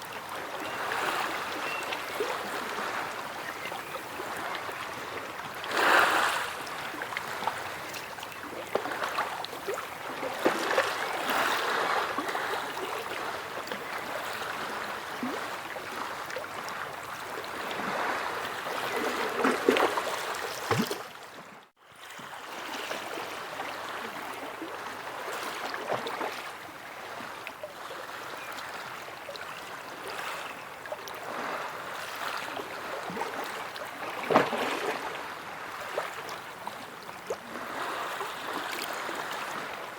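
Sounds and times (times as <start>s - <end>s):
sea waves washing on shore: 0.0s - 16.3s.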